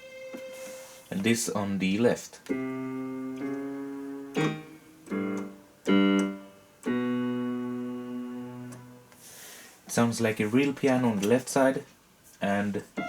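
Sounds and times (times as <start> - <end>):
low piano notes ringing: 2.5 - 9.1.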